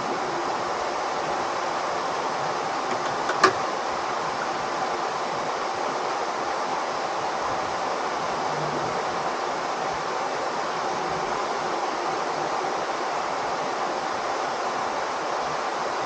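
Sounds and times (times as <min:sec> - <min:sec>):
steady rushing noise: 0:00.0 - 0:16.0.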